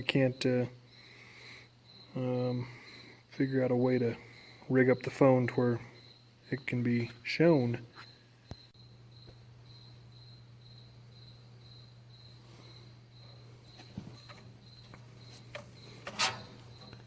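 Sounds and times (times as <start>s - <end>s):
cricket chirping: 0.0s - 17.0s.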